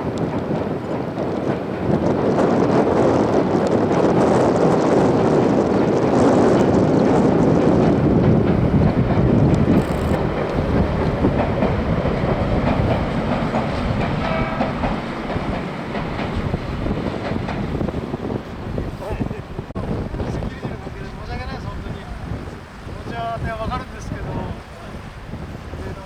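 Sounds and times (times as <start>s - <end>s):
train running on rails: 0.0s - 26.0s.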